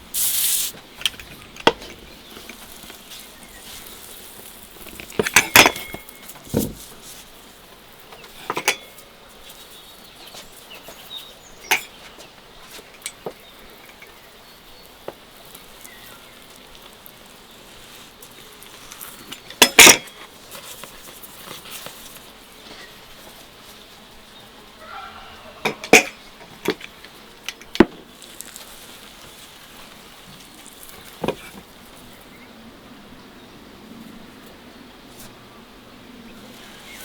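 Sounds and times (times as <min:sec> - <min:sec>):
dishes and utensils clinking: 0:05.2 - 0:06.3.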